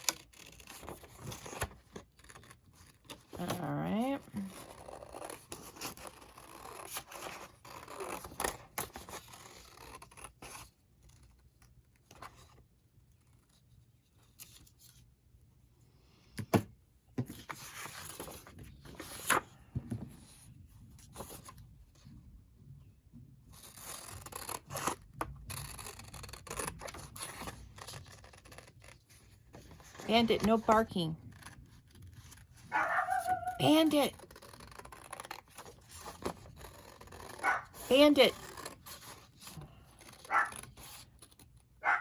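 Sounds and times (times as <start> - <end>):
paper rustling and scraping: 17.2 - 22.1, 23.5 - 41.8.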